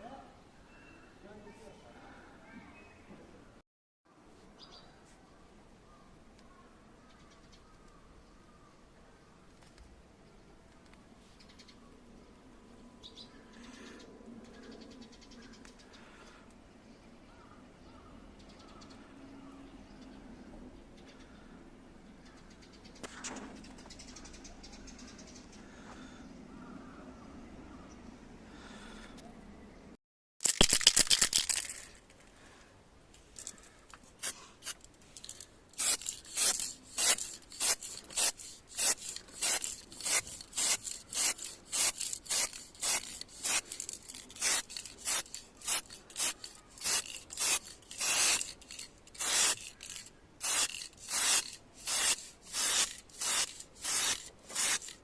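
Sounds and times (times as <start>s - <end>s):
sandpaper rasping on car panel: 35.9s - 48.6s, 50.4s - 55.0s.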